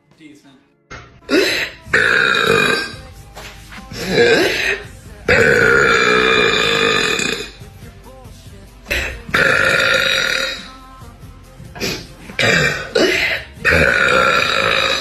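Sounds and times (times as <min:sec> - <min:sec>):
woman burping: 0:01.3 - 0:03.0, 0:04.0 - 0:07.6, 0:08.9 - 0:10.7, 0:11.8 - 0:15.0.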